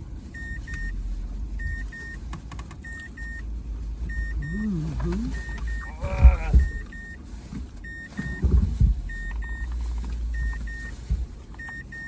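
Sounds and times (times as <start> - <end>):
low rumble in car cabin: 0.0 - 12.0
car warning chime double beeps: 0.4 - 1.0, 1.6 - 2.2, 2.8 - 7.2, 7.8 - 11.0, 11.6 - 12.0.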